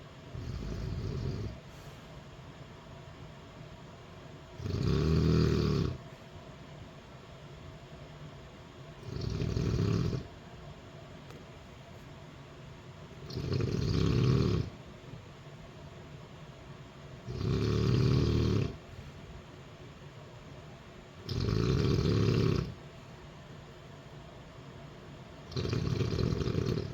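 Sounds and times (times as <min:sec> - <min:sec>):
woman snoring: 0:00.4 - 0:01.6, 0:04.6 - 0:06.0, 0:13.3 - 0:14.7, 0:17.3 - 0:18.8, 0:21.3 - 0:22.8, 0:25.5 - 0:26.9.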